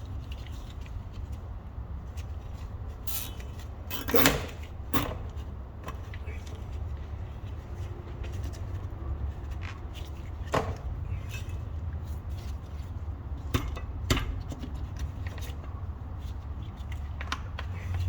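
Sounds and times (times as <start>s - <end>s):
metal tools clinking on metal: 3.9s - 5.2s.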